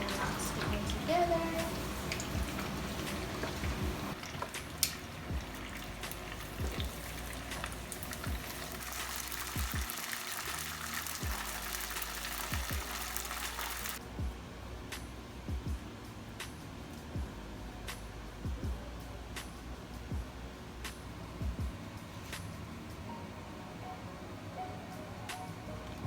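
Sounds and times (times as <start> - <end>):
chicken deep-frying in oil: 0.0 - 14.0
background music with low beat: 0.0 - 26.0.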